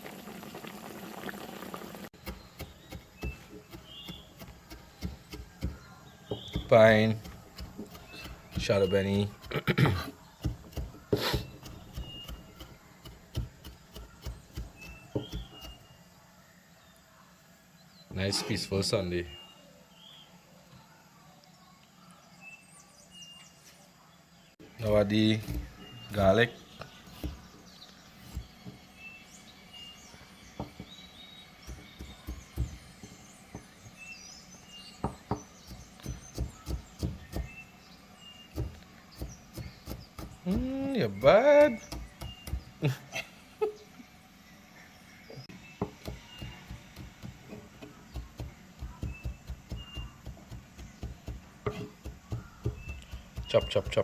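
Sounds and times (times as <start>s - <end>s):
faint bird chirps: 2.2s - 54.0s
knife chopping on cutting board: 10.4s - 15.8s, 35.0s - 37.6s, 45.8s - 54.0s.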